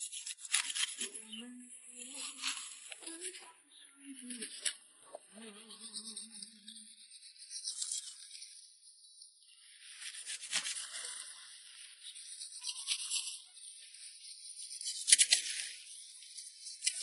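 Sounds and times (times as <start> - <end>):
rustling of plants and leaves: 0.2 - 8.4, 9.6 - 14.0.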